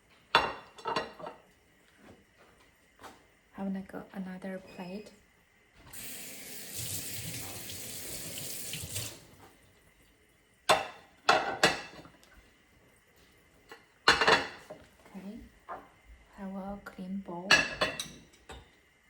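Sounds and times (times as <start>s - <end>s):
dishes clattering: 0.4s - 1.4s, 10.7s - 12.1s, 14.0s - 14.8s, 17.5s - 18.8s
tap running into a sink: 5.9s - 9.3s.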